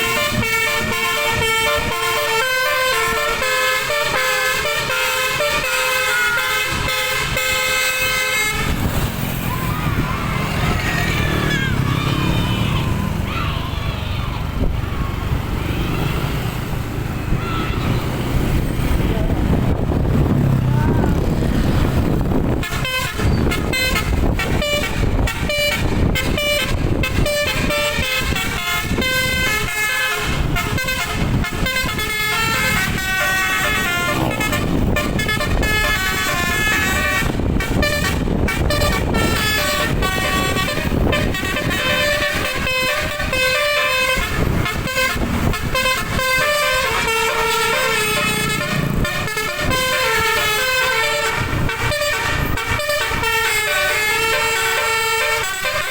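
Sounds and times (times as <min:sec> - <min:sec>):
bus air horn melody: 0:00.0 - 0:09.0, 0:21.9 - 0:55.9.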